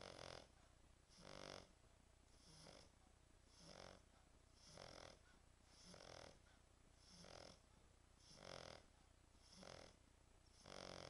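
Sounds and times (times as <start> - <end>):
dog snoring: 0.0 - 0.5, 1.1 - 1.7, 2.3 - 2.9, 3.5 - 4.0, 4.6 - 6.4, 7.0 - 7.6, 8.2 - 11.0.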